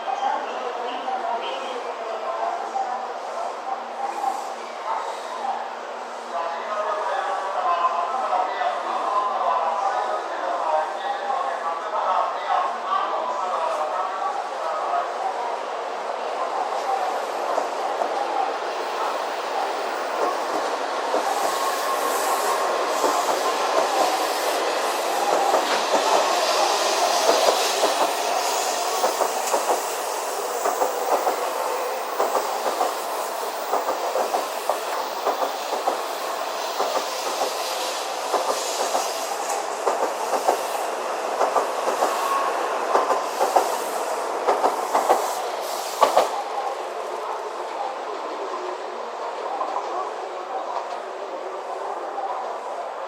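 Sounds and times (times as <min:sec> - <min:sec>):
train rushing noise: 0:13.8 - 0:53.0.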